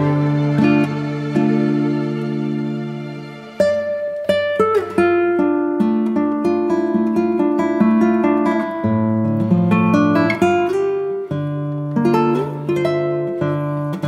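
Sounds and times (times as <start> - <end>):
acoustic guitar playing chords: 0.0 - 14.0.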